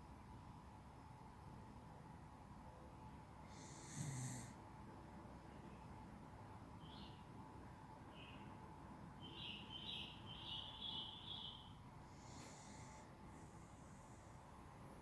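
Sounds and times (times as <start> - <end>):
dog breathing faintly: 12.0 - 14.8.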